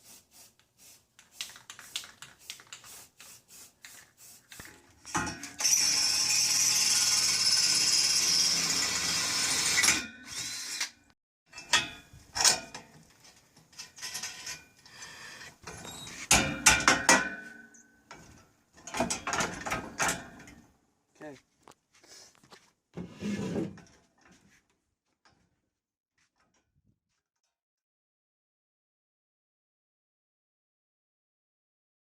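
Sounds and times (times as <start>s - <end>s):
power drill running: 5.5s - 10.9s.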